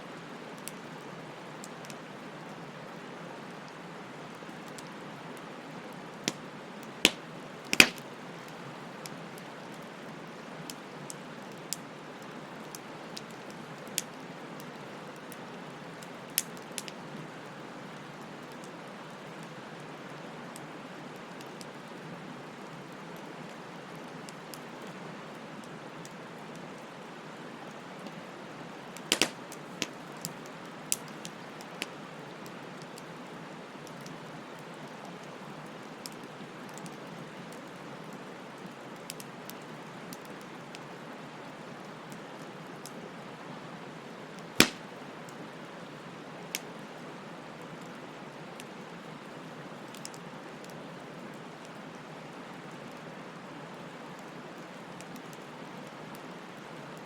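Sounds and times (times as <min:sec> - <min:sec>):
bonfire hissing: 0:03.9 - 0:17.0, 0:27.4 - 0:32.0, 0:44.0 - 0:46.9
fire crackling pops: 0:06.2 - 0:08.5, 0:16.4 - 0:17.0, 0:29.0 - 0:31.9, 0:44.6 - 0:45.0.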